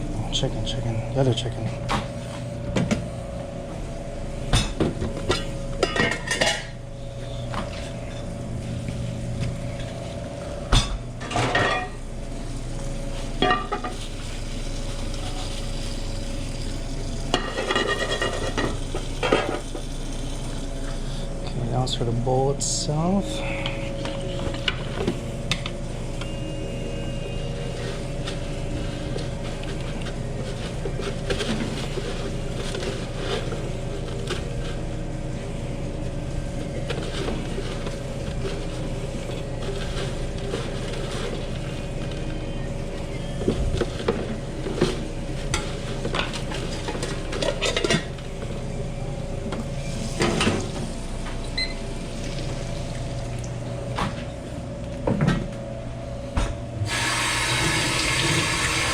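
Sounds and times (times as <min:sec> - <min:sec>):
steady hum: 0:00.0 - 0:58.9
bowls and utensils clattering: 0:04.6 - 0:06.8, 0:10.8 - 0:12.0, 0:13.4 - 0:20.4, 0:43.4 - 0:48.2.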